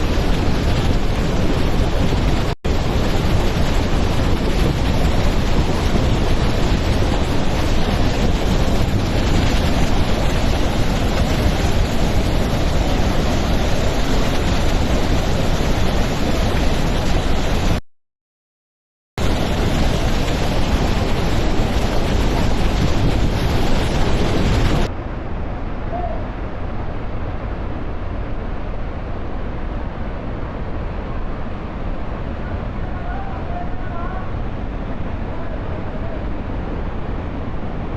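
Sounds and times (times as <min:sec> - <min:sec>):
waterfall roaring: 0:00.0 - 0:17.8, 0:19.2 - 0:24.9
wind rumbling on microphone: 0:00.0 - 0:17.8, 0:19.2 - 0:37.9.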